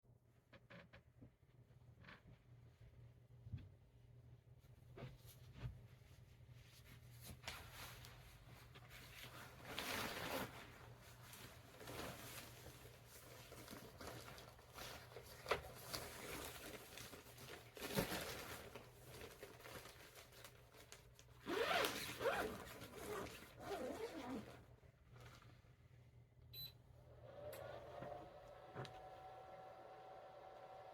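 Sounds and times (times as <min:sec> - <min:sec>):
zipper on fabric bag: 0:21.4 - 0:24.6.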